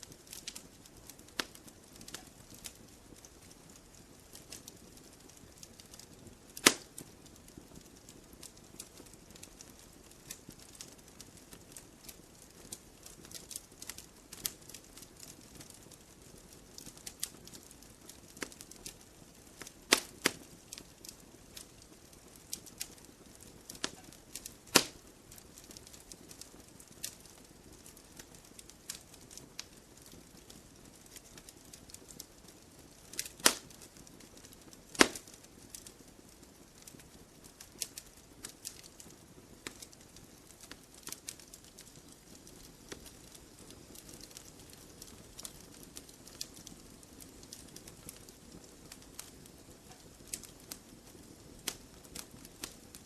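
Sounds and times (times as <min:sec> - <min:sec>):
campfire crackling and popping: 0:00.0 - 0:53.0
faint steady hiss: 0:00.0 - 0:53.0.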